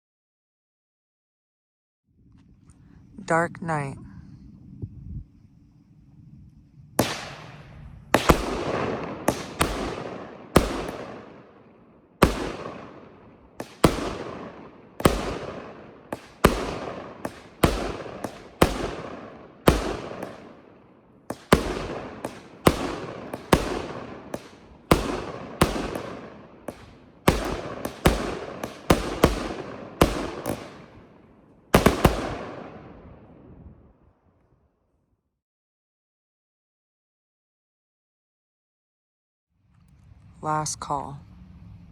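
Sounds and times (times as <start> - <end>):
firework cake firing shots: 7.0 - 33.0.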